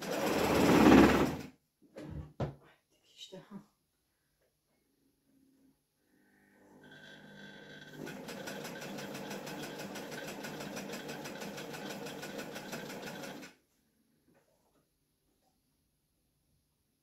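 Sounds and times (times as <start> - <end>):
sewing machine stitching: 0.0 - 1.5, 6.8 - 13.6.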